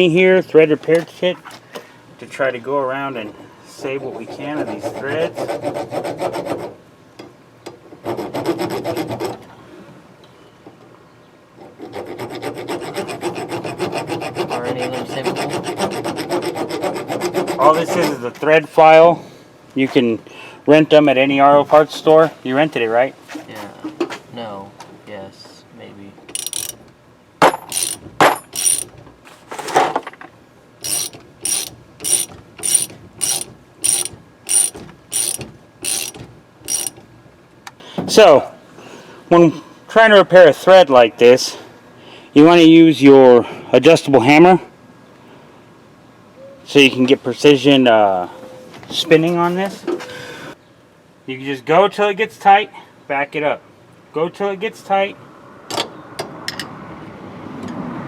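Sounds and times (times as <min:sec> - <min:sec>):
file rasping on bolt threads: 0:03.9 - 0:06.8, 0:08.0 - 0:09.4, 0:11.6 - 0:18.3, 0:26.3 - 0:26.8, 0:27.7 - 0:28.0, 0:28.6 - 0:28.9, 0:30.8 - 0:37.0.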